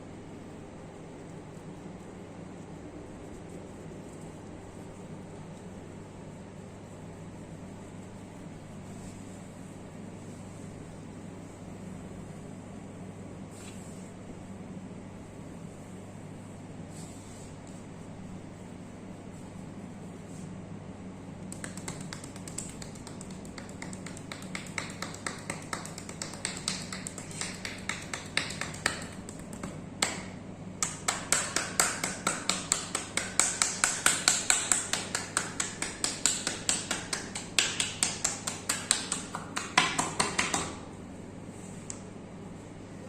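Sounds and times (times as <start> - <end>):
hands slapping on oiled skin: 21.4 - 40.8.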